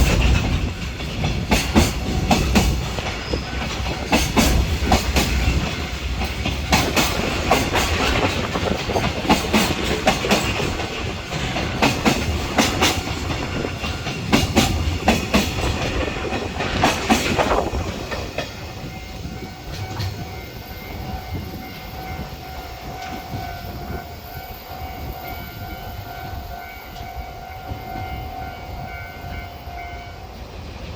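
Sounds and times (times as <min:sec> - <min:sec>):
train wheels clattering over rail joints: 0:00.0 - 0:21.1
steady tone: 0:18.5 - 0:22.7.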